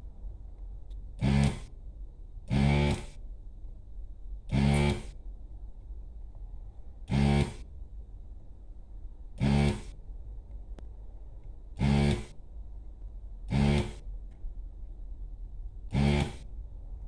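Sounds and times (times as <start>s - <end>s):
desoldering pump buzzing: 1.2s - 1.7s, 2.5s - 3.1s, 4.5s - 5.2s, 7.1s - 7.6s, 9.4s - 10.0s, 11.8s - 12.4s, 13.5s - 14.0s, 15.9s - 16.5s.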